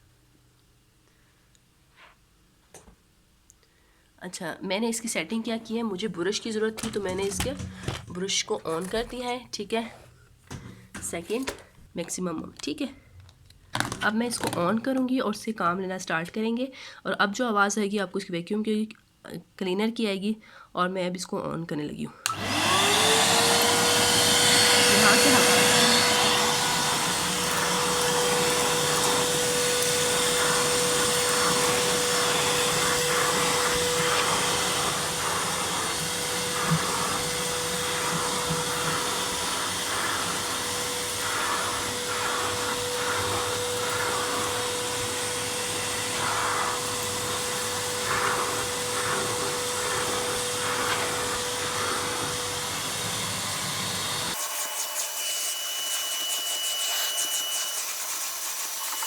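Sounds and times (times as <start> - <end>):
vacuum cleaner on carpet: 22.2 - 59.0.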